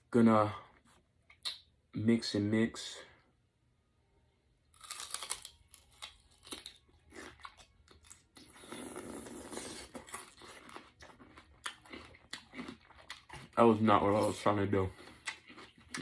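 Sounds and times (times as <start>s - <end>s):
eating chicken wings crunching: 4.8s - 16.0s.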